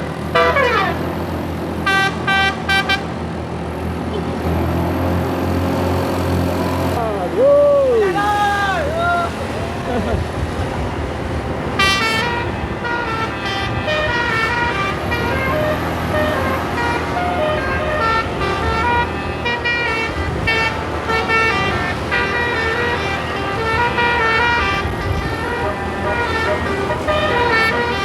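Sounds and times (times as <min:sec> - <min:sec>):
musical air horn melody: 0:00.0 - 0:28.0
steady low rumble: 0:08.8 - 0:27.2.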